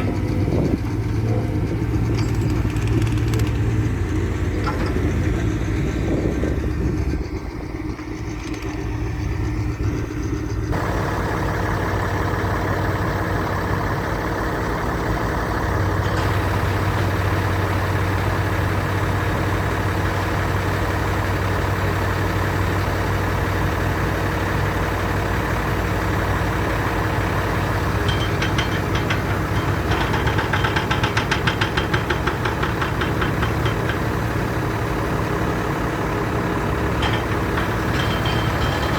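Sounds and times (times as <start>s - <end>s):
road roller engine running: 0.0s - 38.9s
fast even clatter: 2.1s - 3.8s.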